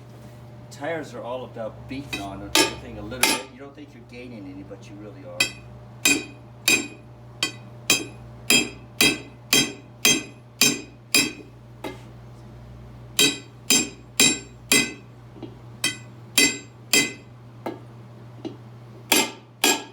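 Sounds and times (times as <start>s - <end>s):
hammer striking steel rim: 5.4s - 11.5s, 13.2s - 15.0s, 15.8s - 17.3s, 19.1s - 19.9s.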